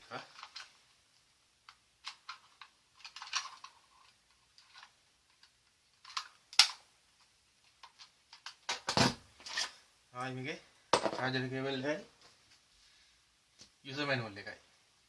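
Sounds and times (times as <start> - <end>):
plastic items clicking and rustling: 0.2 - 0.8, 2.0 - 6.8.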